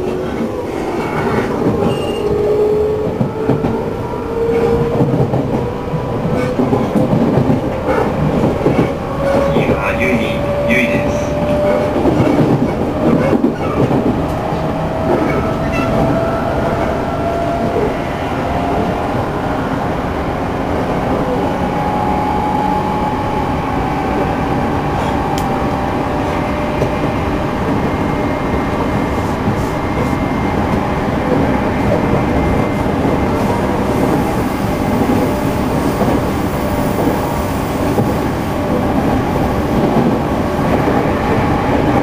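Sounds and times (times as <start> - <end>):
train rolling noise: 0.0 - 42.0.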